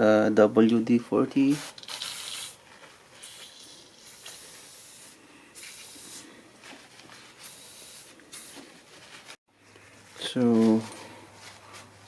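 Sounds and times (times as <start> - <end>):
aerosol can spraying: 1.5 - 2.6, 3.2 - 6.2, 7.4 - 8.6.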